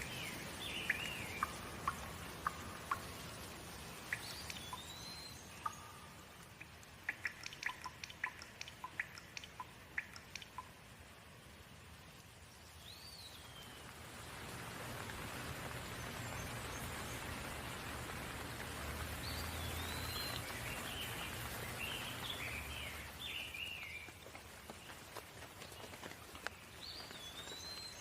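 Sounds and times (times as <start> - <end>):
bird chirps: 0.0 - 3.3, 3.9 - 10.8, 19.2 - 24.2
steady rain falling: 0.0 - 28.0.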